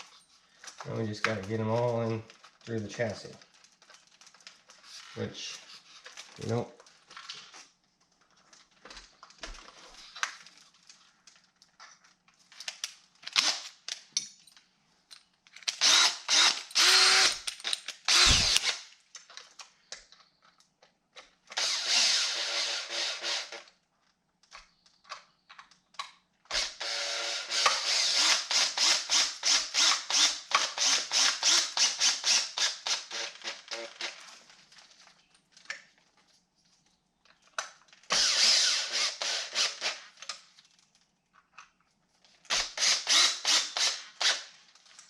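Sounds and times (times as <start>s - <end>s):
drill handling clicks: 15.6s - 18.8s
cordless power drill running: 15.8s - 17.4s, 18.1s - 18.8s, 21.5s - 23.7s, 26.5s - 34.2s, 38.1s - 40.1s, 42.5s - 44.5s.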